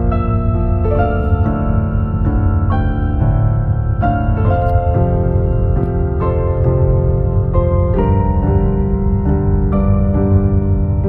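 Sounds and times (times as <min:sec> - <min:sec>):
electric piano notes: 0:00.0 - 0:11.0
steady low bass: 0:00.0 - 0:11.0.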